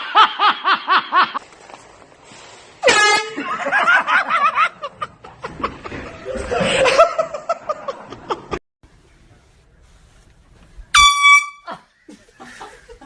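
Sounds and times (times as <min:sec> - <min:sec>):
air horn blast: 0:02.8 - 0:03.4, 0:10.9 - 0:11.8
people laughing: 0:03.3 - 0:08.6, 0:11.6 - 0:13.0.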